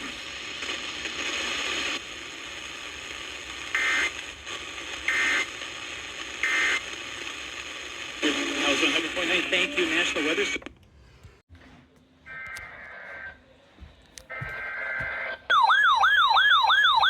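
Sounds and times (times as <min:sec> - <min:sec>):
radio hiss: 0:00.0 - 0:10.7.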